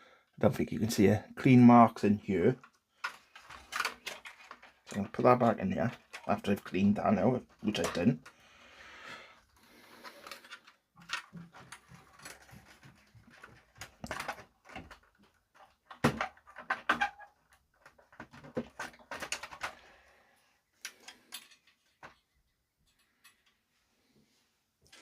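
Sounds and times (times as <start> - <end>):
small parts clicking and scraping: 2.5 - 8.5, 9.4 - 20.1, 20.7 - 23.7.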